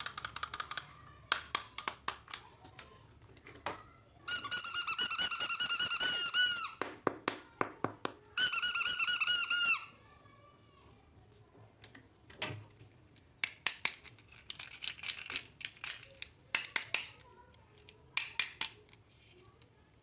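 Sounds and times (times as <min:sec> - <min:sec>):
sharp plastic clicks: 0:00.0 - 0:03.0, 0:13.2 - 0:19.0.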